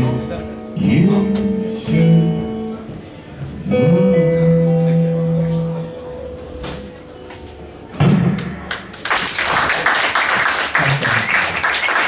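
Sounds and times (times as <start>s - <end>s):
small audience applauding: 8.4s - 12.0s.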